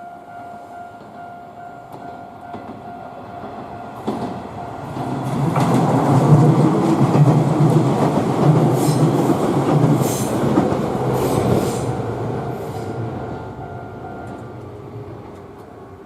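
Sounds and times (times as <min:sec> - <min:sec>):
train wheels rumbling on rails: 0:00.8 - 0:16.0.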